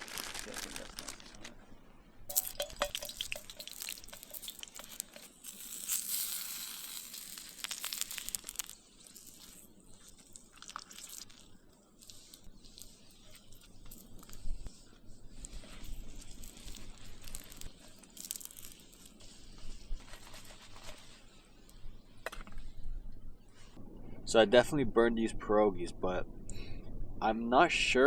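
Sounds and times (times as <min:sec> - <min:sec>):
food frying crackles and pops: 0:00.0 - 0:01.5, 0:02.3 - 0:14.6, 0:15.4 - 0:21.2
frying pan sizzling hiss: 0:02.3 - 0:14.6.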